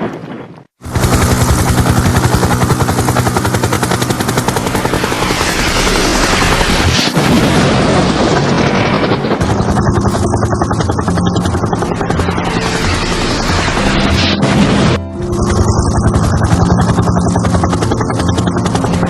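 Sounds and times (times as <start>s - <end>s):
helicopter rotor chopping: 0.8s - 19.0s.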